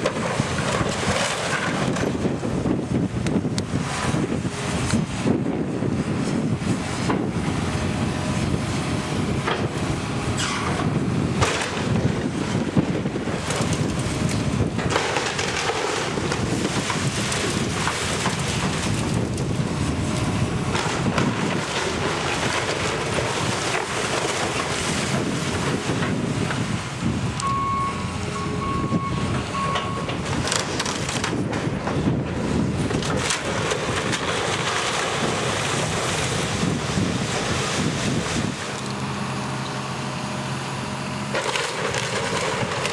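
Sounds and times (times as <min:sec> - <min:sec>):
wind buffeting microphone: 0:00.0 - 0:38.8
demolition work: 0:00.0 - 0:42.9
debris knocking and crunching: 0:11.4 - 0:19.8
short beeps: 0:27.4 - 0:30.1.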